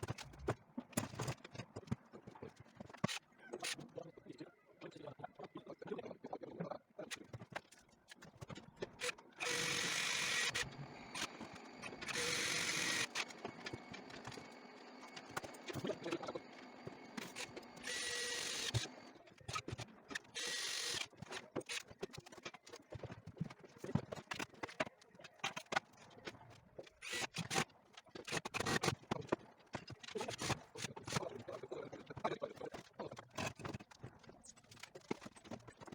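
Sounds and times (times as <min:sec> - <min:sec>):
power drill driving screws: 0:09.0 - 0:16.1, 0:16.8 - 0:19.1, 0:20.1 - 0:21.8, 0:27.0 - 0:27.6.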